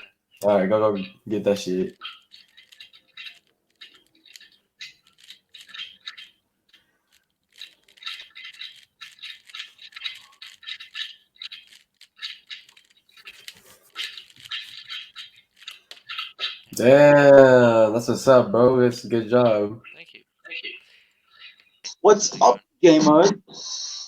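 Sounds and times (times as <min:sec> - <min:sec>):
plastic cube layers clicking: 0:02.1 - 0:06.3, 0:07.1 - 0:16.9.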